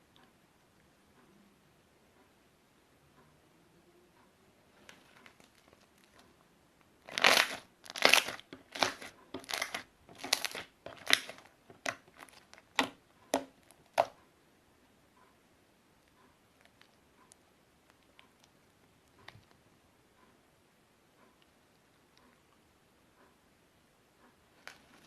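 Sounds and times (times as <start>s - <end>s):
slime being squeezed: 7.1s - 14.1s.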